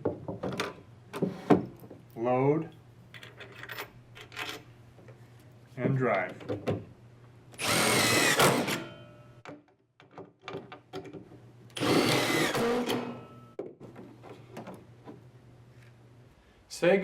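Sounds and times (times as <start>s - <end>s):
power drill driving screws: 7.6s - 8.9s, 11.8s - 13.2s.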